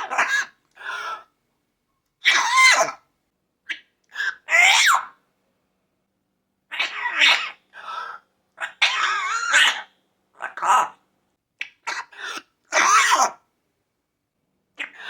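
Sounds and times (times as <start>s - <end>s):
parrot imitating coughs and sneezes: 11.6s - 13.4s.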